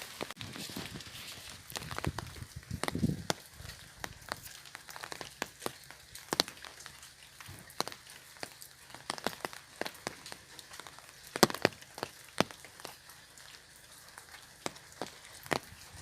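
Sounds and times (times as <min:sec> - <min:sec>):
raindrops tapping on umbrella: 0:00.0 - 0:16.0.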